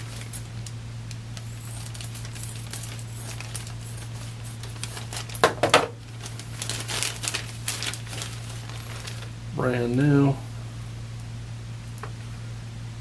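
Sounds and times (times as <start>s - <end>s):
loud plastic crinkles: 0.0s - 9.4s
plastic bag rustling: 0.0s - 10.3s
steady low hum: 0.0s - 13.0s.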